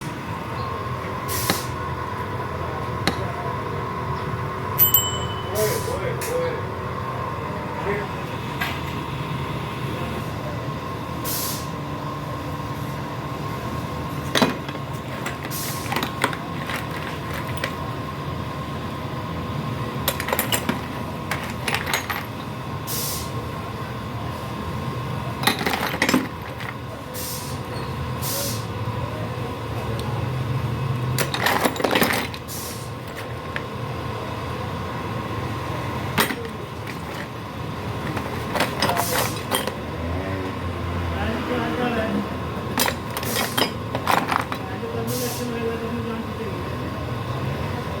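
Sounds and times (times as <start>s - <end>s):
constant high tone: 4.2s - 6.7s
metallic clinks and knocks: 4.8s - 5.8s.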